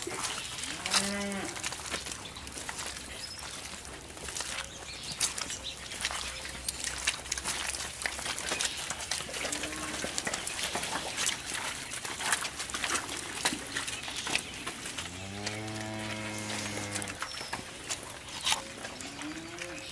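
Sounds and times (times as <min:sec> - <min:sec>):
cow mooing: 0:00.7 - 0:01.6, 0:15.0 - 0:17.2.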